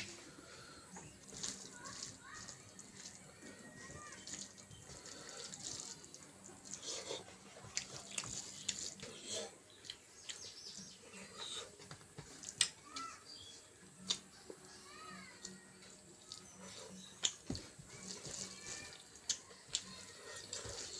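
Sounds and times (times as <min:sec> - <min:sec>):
person chewing wetly: 0:04.2 - 0:10.5, 0:16.2 - 0:20.9.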